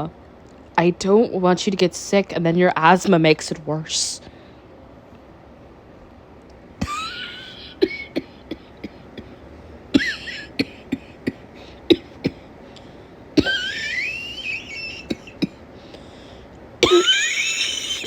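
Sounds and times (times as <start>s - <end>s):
woman coughing: 6.8s - 12.5s, 13.4s - 15.6s, 16.8s - 18.0s.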